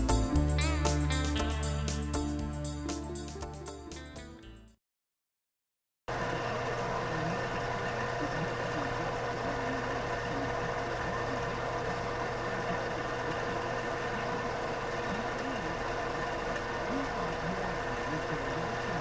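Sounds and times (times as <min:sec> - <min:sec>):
metal lathe humming: 0:06.1 - 0:19.0
faint radio voice: 0:06.4 - 0:15.9, 0:16.8 - 0:19.0.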